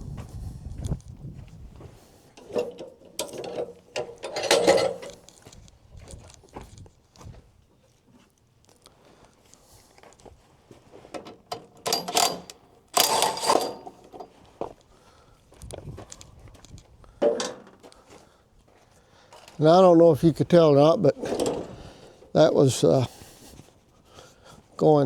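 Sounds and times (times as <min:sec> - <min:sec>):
mechanical clanking and rattling: 0:02.4 - 0:05.4, 0:11.2 - 0:14.3, 0:17.2 - 0:17.8, 0:21.2 - 0:22.0.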